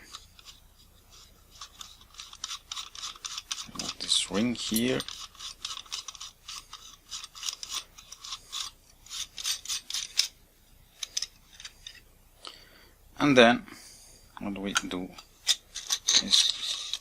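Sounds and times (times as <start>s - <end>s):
rubber tool rubbing on metal ring: 0.0s - 10.4s, 15.2s - 17.0s.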